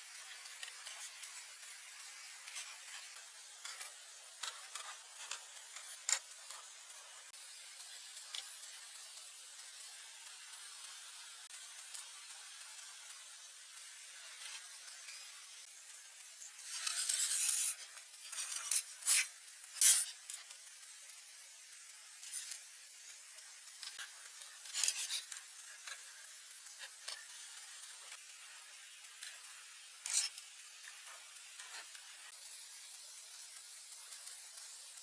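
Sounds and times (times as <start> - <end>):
scraping strokes: 24.6 - 26.0.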